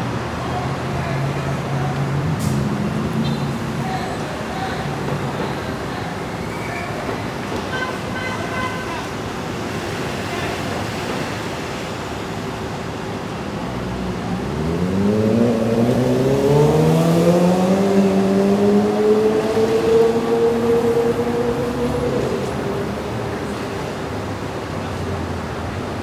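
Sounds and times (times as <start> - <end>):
city traffic noise: 0.0 - 26.0
vehicle engine accelerating: 13.9 - 23.8.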